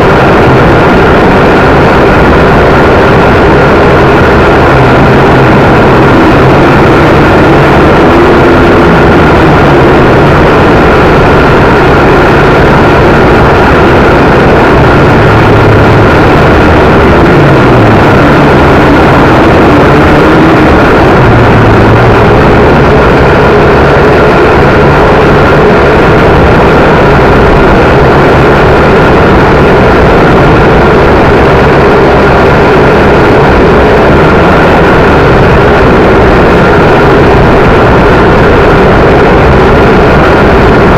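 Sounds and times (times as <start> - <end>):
wind noise on microphone: 0.0 - 40.9.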